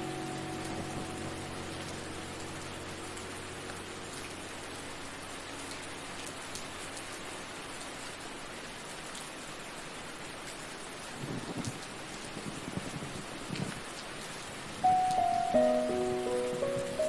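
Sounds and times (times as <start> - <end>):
steady rain falling: 0.0 - 17.0.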